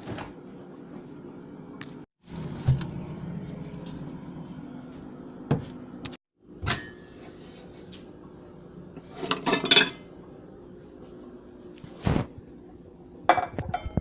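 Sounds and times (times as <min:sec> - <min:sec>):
steady low hum: 0:00.5 - 0:13.9
kitchen clattering: 0:09.1 - 0:10.1.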